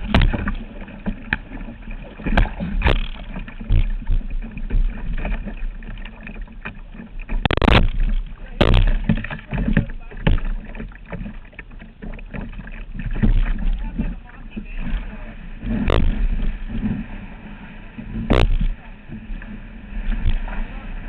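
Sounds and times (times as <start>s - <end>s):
paddle splashes in water: 0.0s - 21.0s
steady low rumble: 0.0s - 21.0s.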